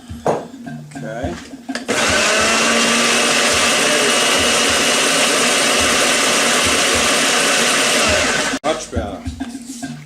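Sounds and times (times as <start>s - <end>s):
electric blender running: 1.9s - 8.6s.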